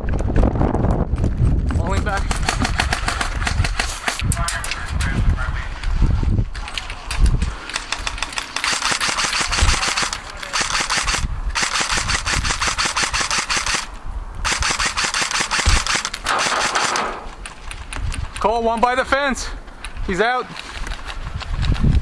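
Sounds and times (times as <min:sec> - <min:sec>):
airsoft guns firing full-auto: 0:02.2 - 0:04.1, 0:07.8 - 0:17.3.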